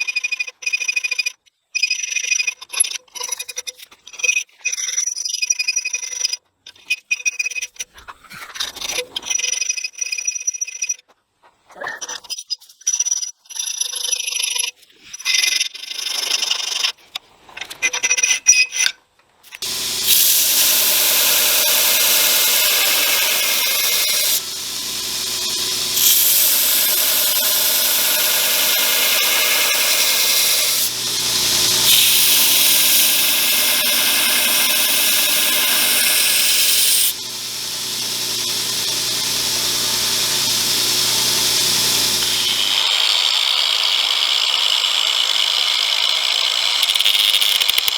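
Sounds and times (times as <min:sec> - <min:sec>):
electric grinder grinding steel: 0:19.6 - 0:47.9.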